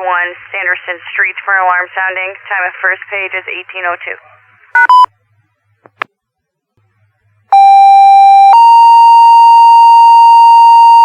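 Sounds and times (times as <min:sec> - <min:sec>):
two-tone pager alert tones: 0:07.6 - 0:11.0.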